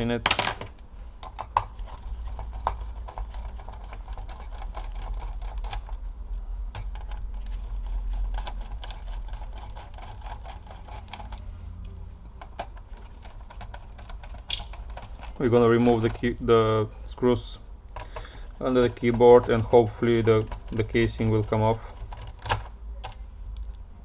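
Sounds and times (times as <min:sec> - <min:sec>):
low steady hum: 0:00.0 - 0:24.0
tools clicking on plastic: 0:00.2 - 0:06.0, 0:06.7 - 0:16.4, 0:17.9 - 0:23.7.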